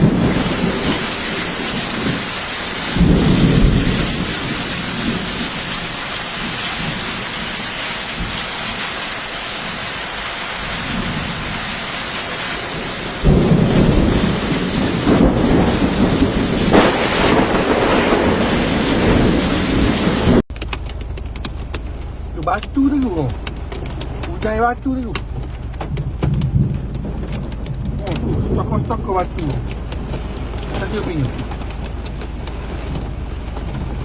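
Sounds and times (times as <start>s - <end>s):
heavy rain pouring: 0.0s - 34.0s
low rumble: 12.4s - 34.0s.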